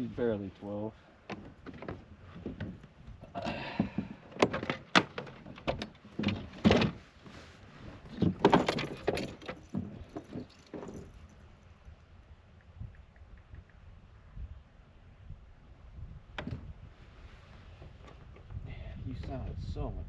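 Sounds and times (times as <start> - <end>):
knocks and rattling of gear: 1.3 - 11.4.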